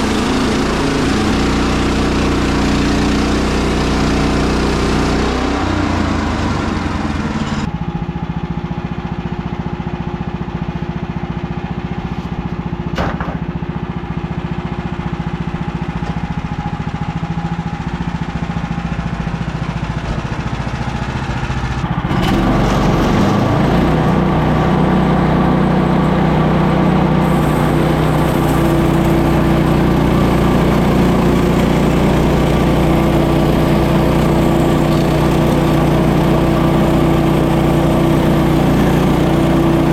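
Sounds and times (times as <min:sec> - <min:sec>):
sawmill gas engine running: 0:00.0 - 0:39.9
hiss: 0:27.2 - 0:28.8.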